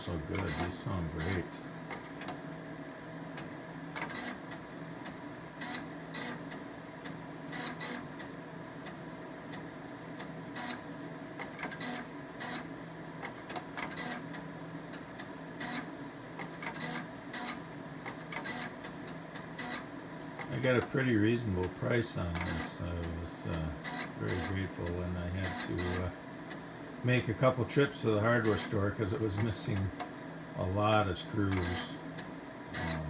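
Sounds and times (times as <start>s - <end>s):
floppy drive seek clicks and buzzes: 0.0s - 2.5s, 3.3s - 33.0s
steady hum: 0.0s - 4.0s, 12.1s - 33.0s.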